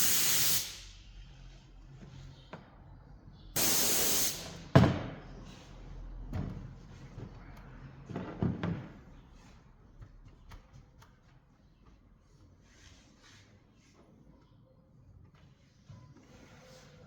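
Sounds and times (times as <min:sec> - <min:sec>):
hissing spray: 0:00.0 - 0:00.8, 0:03.6 - 0:04.6.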